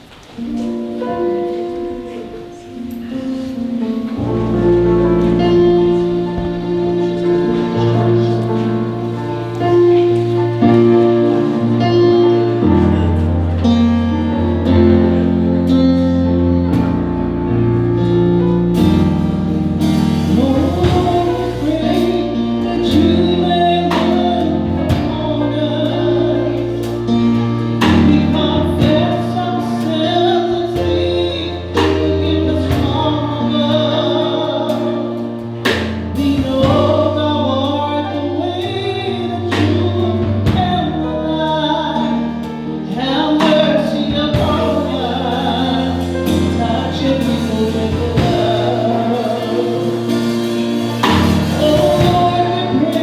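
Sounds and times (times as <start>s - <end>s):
choir singing a gospel hymn: 0.0s - 53.0s
instrumental accompaniment with bass: 0.4s - 53.0s.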